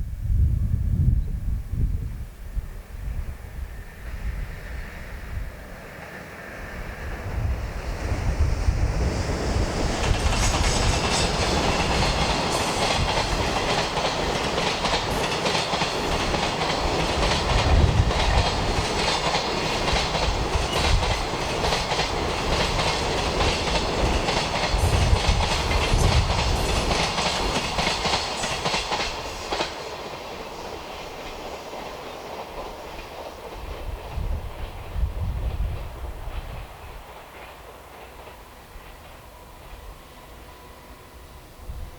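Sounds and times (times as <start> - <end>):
freight train passing: 0.0 - 41.9.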